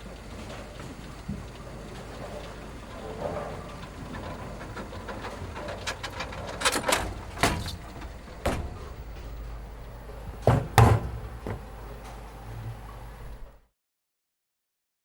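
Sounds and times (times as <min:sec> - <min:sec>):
loud thumps: 0:07.4 - 0:09.5, 0:10.3 - 0:11.7
knocks and clicks: 0:10.3 - 0:12.2.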